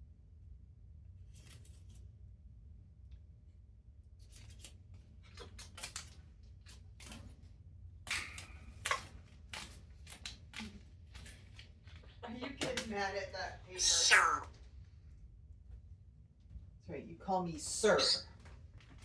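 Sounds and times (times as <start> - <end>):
parrot chewing and tearing paper: 1.2 - 2.3, 4.0 - 12.2.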